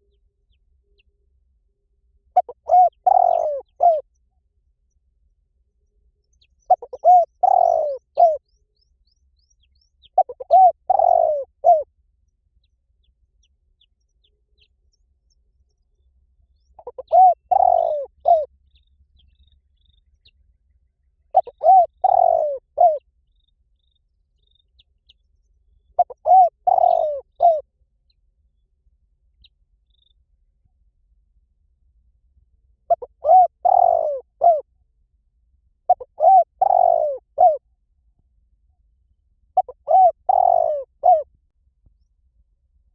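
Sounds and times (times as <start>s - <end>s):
dove cooing: 2.4s - 4.0s, 6.7s - 8.4s, 10.2s - 11.9s, 16.8s - 18.5s, 21.3s - 23.0s, 26.0s - 27.6s, 32.9s - 34.7s, 35.9s - 37.6s, 39.6s - 41.3s.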